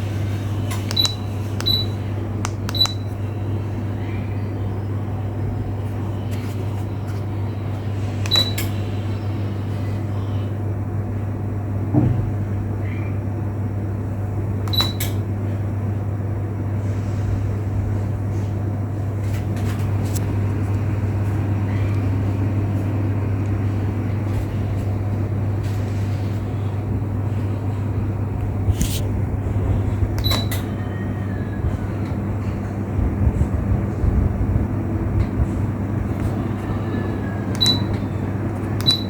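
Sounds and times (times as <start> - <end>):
ceiling fan motor hum: 0.0 - 39.0
short clicks: 0.9 - 1.8, 2.4 - 3.0, 37.5 - 37.9.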